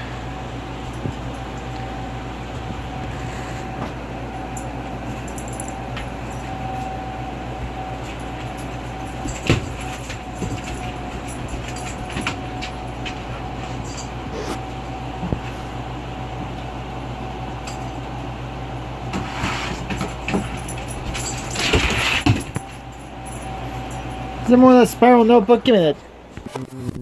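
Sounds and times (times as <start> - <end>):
low machine hum: 0.0 - 27.0.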